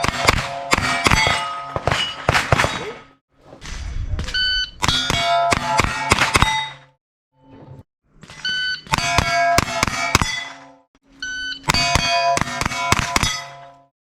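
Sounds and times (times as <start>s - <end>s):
rapid gunshots: 0.0s - 3.0s
steel targets ringing: 0.0s - 3.1s, 4.8s - 7.0s, 8.2s - 10.8s, 11.6s - 13.8s.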